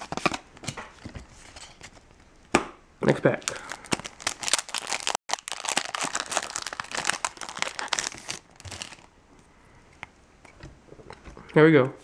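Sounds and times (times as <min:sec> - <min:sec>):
foil wrapper crinkling and tearing: 0:03.4 - 0:09.1.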